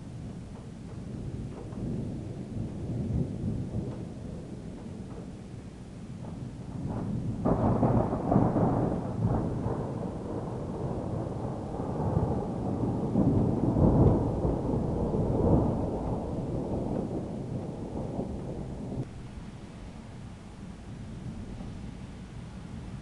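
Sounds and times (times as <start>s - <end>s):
thunder clap and rumble: 0.0s - 23.0s.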